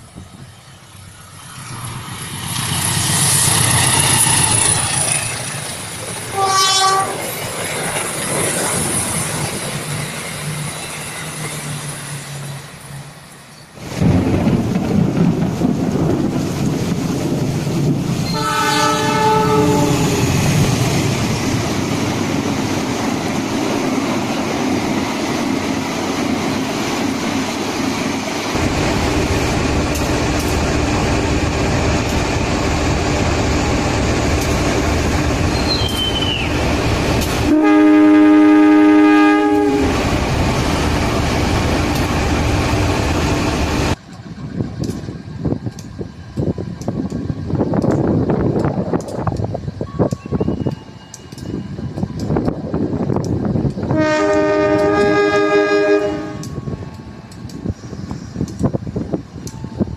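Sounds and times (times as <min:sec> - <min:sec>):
moving train wheel clatter: 0:00.0 - 0:59.9
locomotive horn blasts: 0:06.3 - 0:07.2, 0:18.2 - 0:20.2, 0:37.5 - 0:40.0, 0:53.9 - 0:56.5.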